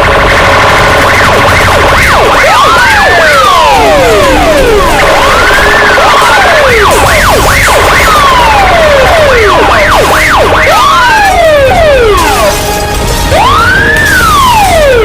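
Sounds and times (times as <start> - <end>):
siren wails and whoops: 0.0 - 15.0.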